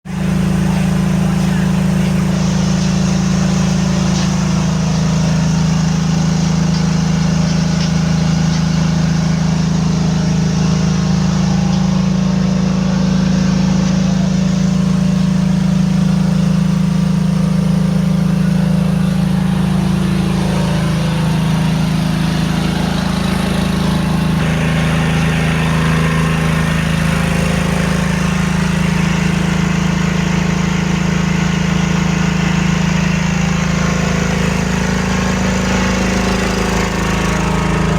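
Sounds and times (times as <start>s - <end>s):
air compressor humming: 0.0s - 37.9s.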